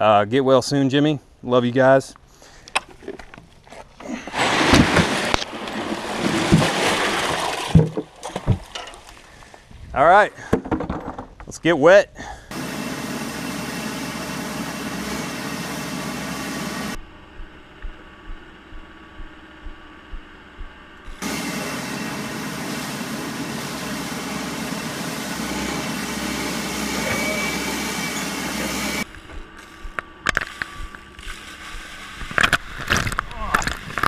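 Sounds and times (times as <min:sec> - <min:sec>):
diesel engine running hard: 0:12.5 - 0:17.0, 0:21.2 - 0:29.0.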